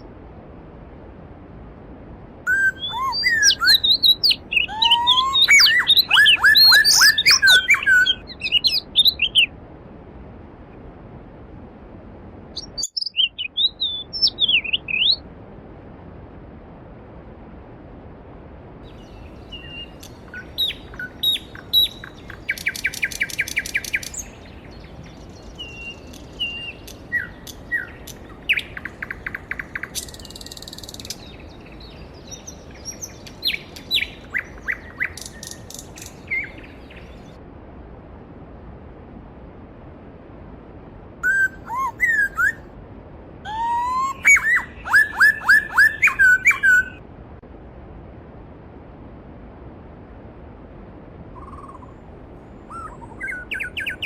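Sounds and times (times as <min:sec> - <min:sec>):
songbirds chirping and trilling: 0:02.5 - 0:09.5, 0:12.6 - 0:15.2, 0:18.9 - 0:37.4, 0:41.2 - 0:42.6, 0:43.5 - 0:47.0, 0:52.6 - 0:54.0.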